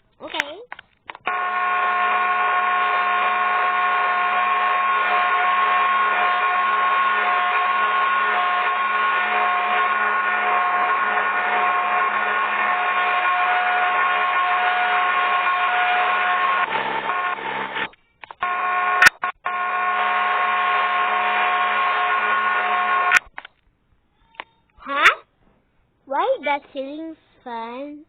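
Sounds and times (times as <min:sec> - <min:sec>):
ceiling fan whirring: 0:01.0 - 0:23.3.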